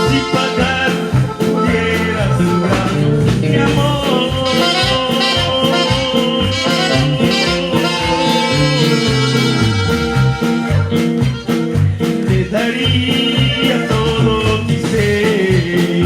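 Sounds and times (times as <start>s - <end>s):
people singing a hymn: 0.0s - 9.8s
bass line: 0.0s - 16.0s
guitar: 0.0s - 16.0s
percussion steady beat: 0.0s - 16.0s.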